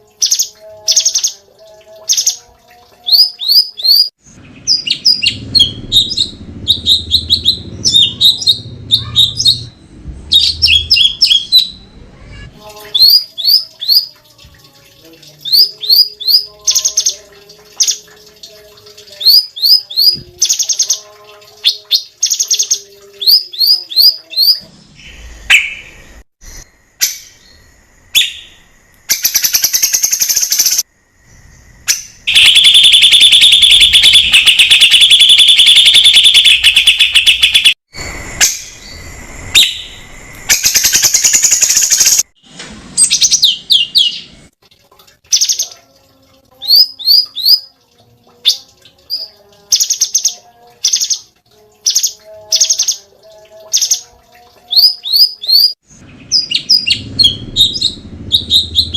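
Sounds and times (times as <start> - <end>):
low steady bird notes: 0.0 - 12.0, 45.3 - 58.9
bird singing whistled notes: 15.4 - 17.2, 21.7 - 37.8, 54.7 - 58.9.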